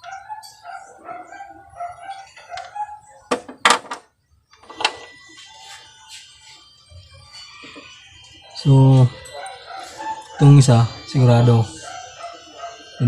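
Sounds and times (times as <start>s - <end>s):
rooster crowing: 7.2s - 13.0s.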